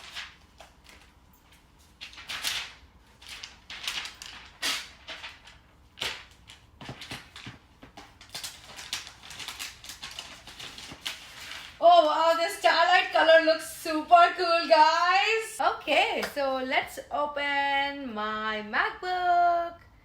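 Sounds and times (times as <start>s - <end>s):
paper and cardboard rustling: 0.0s - 12.8s.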